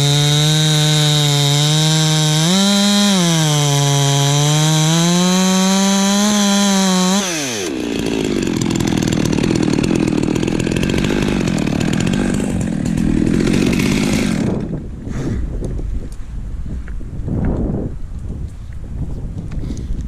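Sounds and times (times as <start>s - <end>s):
chainsaw cutting wood: 0.0s - 14.9s.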